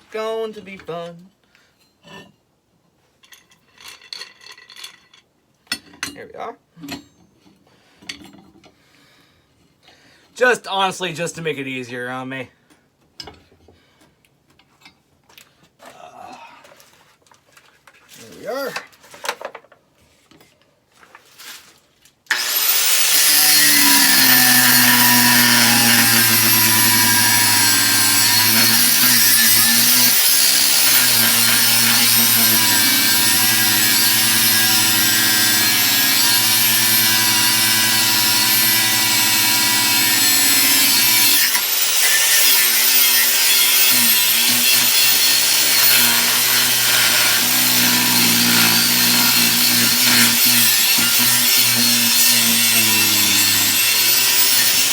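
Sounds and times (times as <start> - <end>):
electric grinder grinding steel: 22.3 - 54.9.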